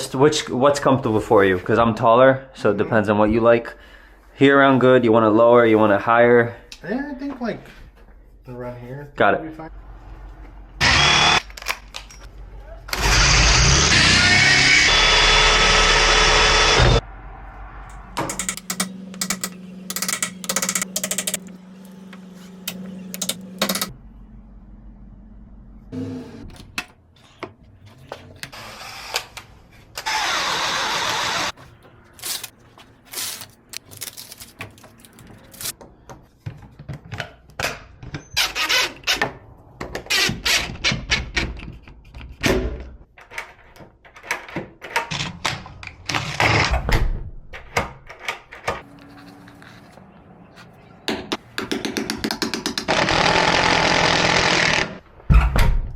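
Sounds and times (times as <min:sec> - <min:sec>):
power drill running: 0:10.8 - 0:11.4, 0:12.9 - 0:17.0, 0:30.0 - 0:31.5, 0:52.9 - 0:55.0
hardware clicks and knocks: 0:18.2 - 0:23.9.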